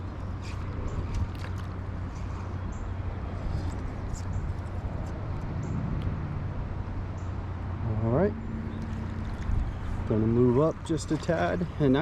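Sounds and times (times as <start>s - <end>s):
constant low hum: 0.0s - 12.0s
creek water rushing: 8.6s - 12.0s.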